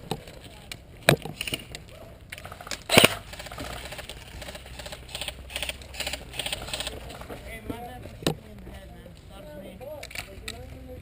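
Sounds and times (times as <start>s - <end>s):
sharp clicks: 0.1s - 7.3s.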